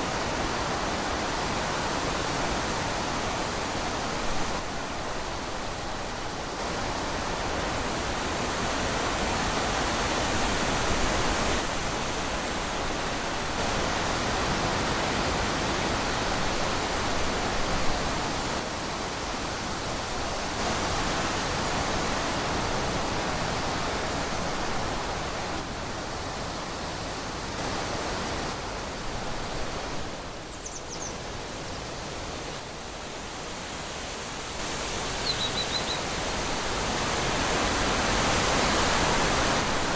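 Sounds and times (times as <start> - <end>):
wind blowing through trees: 0.0 - 39.9
faint high chirp: 30.5 - 31.2, 35.2 - 36.0.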